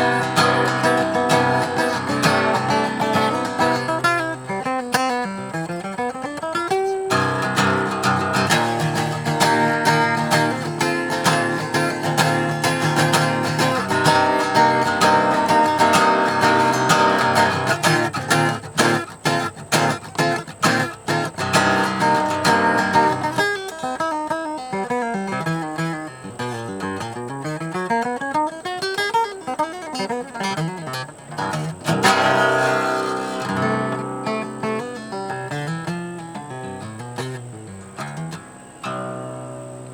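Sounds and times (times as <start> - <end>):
acoustic guitar strumming: 0.0 - 39.9.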